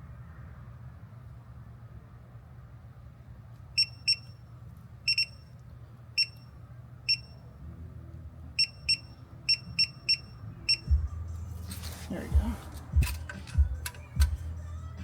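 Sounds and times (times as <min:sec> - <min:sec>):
short high-pitched electronic beeps: 0:03.8 - 0:04.3, 0:05.1 - 0:05.4, 0:06.2 - 0:06.5, 0:08.6 - 0:11.0
low hum: 0:05.3 - 0:15.0.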